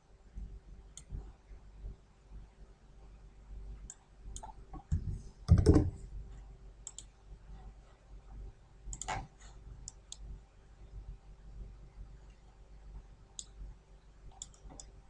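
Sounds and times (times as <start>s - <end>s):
computer mouse clicking: 6.8s - 7.1s, 8.9s - 10.3s, 14.3s - 15.0s.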